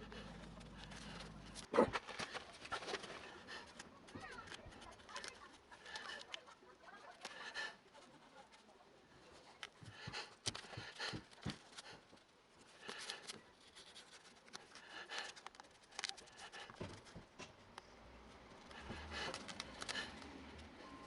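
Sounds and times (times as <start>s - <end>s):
small objects clicking and scraping: 0.4s - 7.5s, 12.7s - 17.2s, 17.8s - 20.7s.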